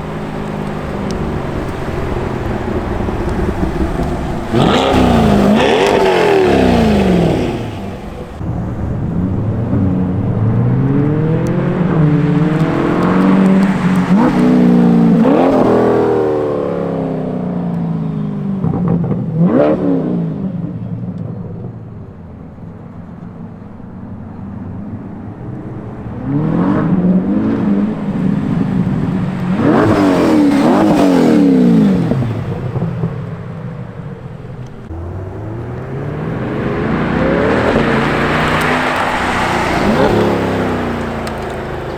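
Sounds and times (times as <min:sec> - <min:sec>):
car engine revving: 0:00.0 - 0:21.0, 0:25.4 - 0:33.3, 0:34.5 - 0:41.9.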